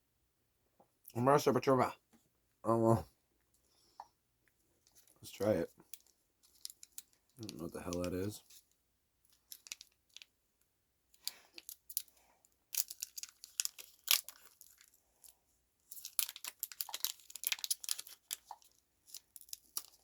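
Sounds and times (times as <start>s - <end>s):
plastic wrapper tearing and crinkling: 5.9s - 8.6s, 9.3s - 10.3s, 11.2s - 20.0s.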